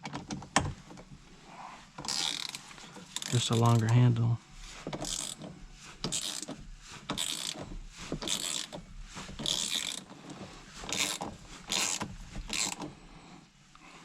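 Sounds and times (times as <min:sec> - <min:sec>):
ratchet wrench clicking: 0:02.0 - 0:04.0, 0:05.0 - 0:08.8, 0:09.4 - 0:10.1, 0:10.9 - 0:12.9.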